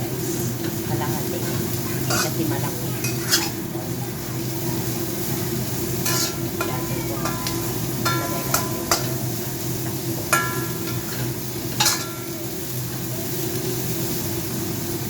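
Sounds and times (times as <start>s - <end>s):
food sizzling in hot oil: 0.0s - 15.0s
metal spatula clinking on pan: 1.4s - 2.4s, 3.0s - 3.6s, 6.0s - 12.6s.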